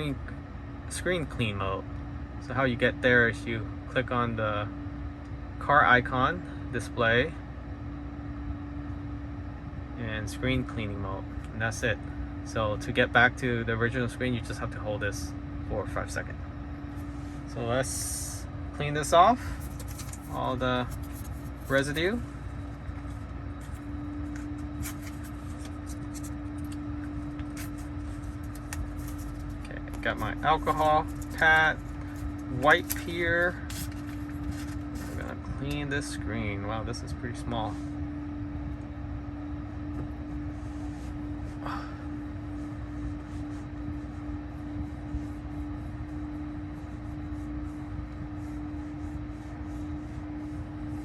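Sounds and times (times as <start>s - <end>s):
faint steady hum: 0.0s - 51.0s
wipe rubbing on touchscreen: 19.1s - 35.3s, 40.4s - 41.6s, 42.5s - 51.0s
foil wrapper crinkling and tearing: 24.8s - 35.3s.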